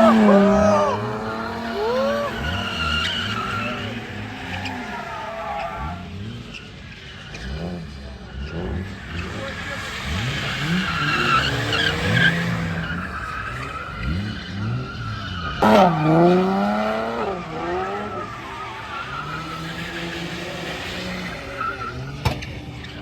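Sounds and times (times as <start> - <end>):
tyres squealing: 0.0 - 5.7
car engines revving: 0.0 - 23.0.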